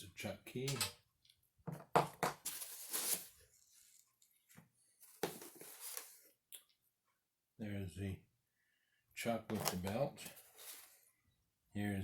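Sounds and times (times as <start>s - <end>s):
packaging rustling and crinkling: 2.4s - 4.1s.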